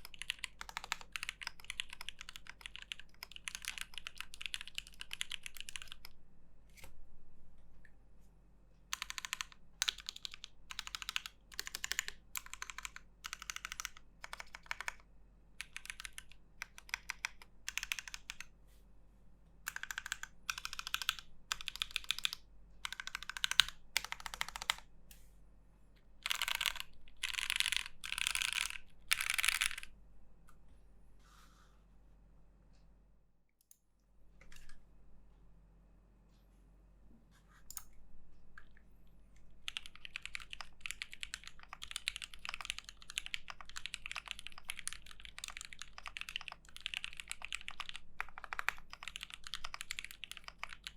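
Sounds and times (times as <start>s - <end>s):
mechanical keyboard typing: 0.0s - 6.2s, 8.9s - 18.5s, 19.7s - 24.9s, 26.2s - 29.9s, 39.6s - 50.9s.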